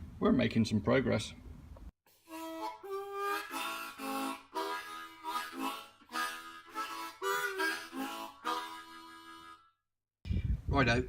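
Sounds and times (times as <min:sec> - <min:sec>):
harmonica playing chords: 0:02.1 - 0:09.9.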